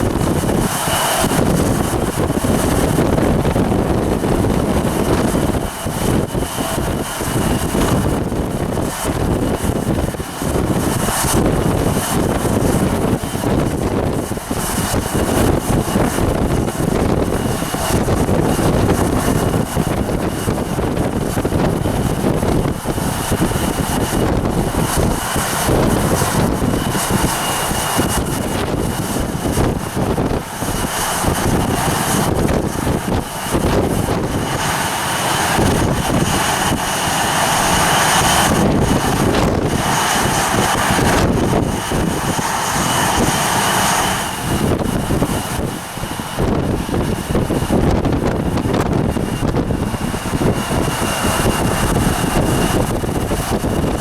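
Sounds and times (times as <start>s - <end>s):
jet engine high whine: 0.0s - 54.0s
wind buffeting microphone: 0.0s - 54.0s.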